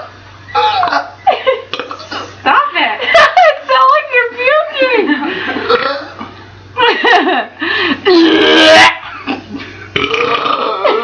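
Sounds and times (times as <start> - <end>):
people laughing: 1.2 - 1.7, 3.0 - 3.9, 4.8 - 5.8, 6.8 - 8.2.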